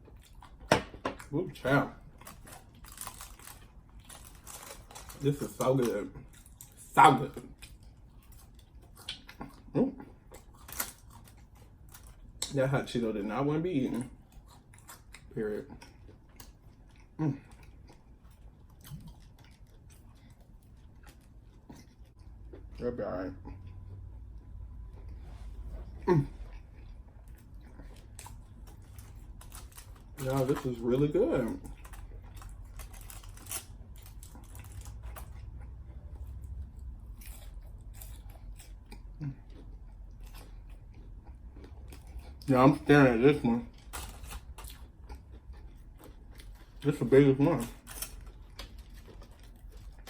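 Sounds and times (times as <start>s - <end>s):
crunchy snack chewing: 1.5s - 12.6s, 26.0s - 50.0s.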